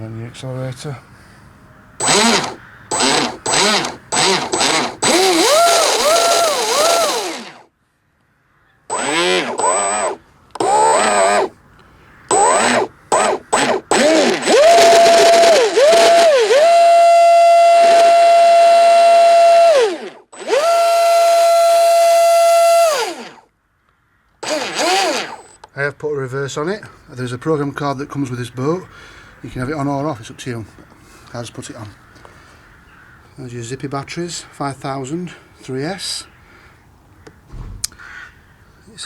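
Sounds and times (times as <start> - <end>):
electric motor revving: 2.0 - 7.7, 8.9 - 11.5, 12.3 - 23.4, 24.4 - 25.6.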